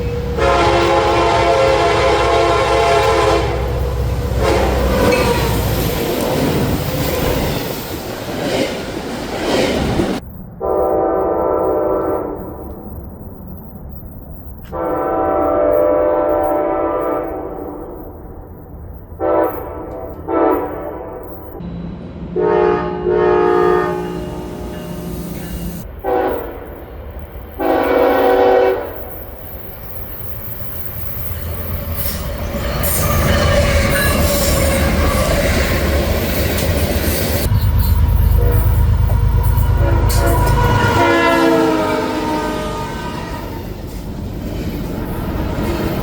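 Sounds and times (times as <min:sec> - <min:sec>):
locomotive air horn blasts: 0:00.0 - 0:05.5, 0:10.6 - 0:12.6, 0:14.7 - 0:18.0, 0:19.2 - 0:21.2, 0:22.3 - 0:26.6, 0:27.6 - 0:29.0, 0:37.4 - 0:43.7
train passing with rail noise: 0:00.0 - 0:46.0.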